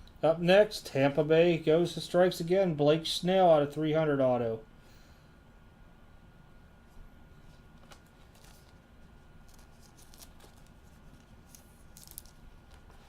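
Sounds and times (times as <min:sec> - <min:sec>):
plastic packaging crinkling: 0:07.8 - 0:13.0.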